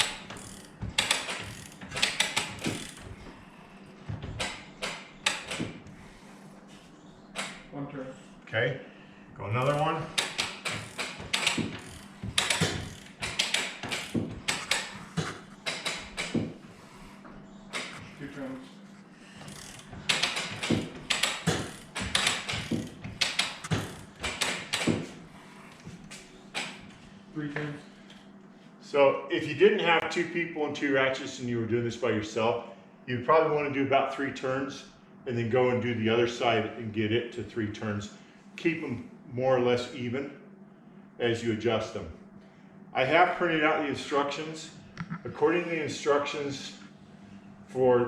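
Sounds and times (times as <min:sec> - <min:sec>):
ratchet wrenches clicking: 0:09.6 - 0:15.0, 0:19.4 - 0:25.0.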